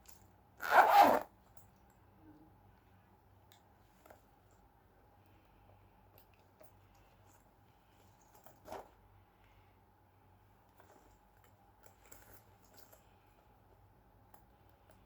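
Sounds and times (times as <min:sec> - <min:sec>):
bag rustling and clicks: 0:06.6 - 0:09.0, 0:10.7 - 0:13.1.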